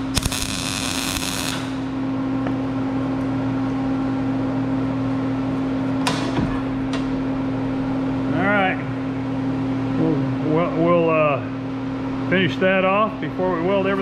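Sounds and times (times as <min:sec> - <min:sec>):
welding arc buzzing: 0:00.0 - 0:02.3
electrical hum: 0:00.0 - 0:14.0.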